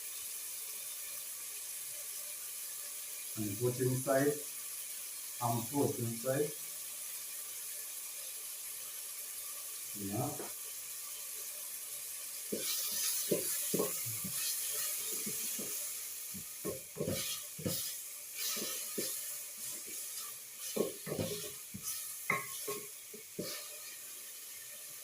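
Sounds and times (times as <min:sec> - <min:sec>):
food sizzling in a pot: 0:00.0 - 0:25.0
utensil scraping and knocking pot: 0:12.5 - 0:24.0.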